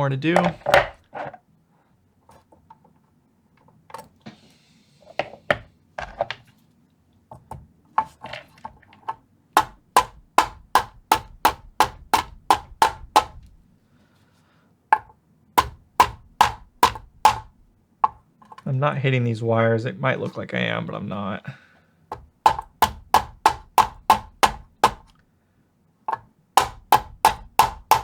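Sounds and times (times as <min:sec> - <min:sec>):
hammer tapping on screwdriver: 0:09.6 - 0:13.6, 0:14.9 - 0:18.2, 0:22.1 - 0:25.2, 0:26.1 - 0:28.0.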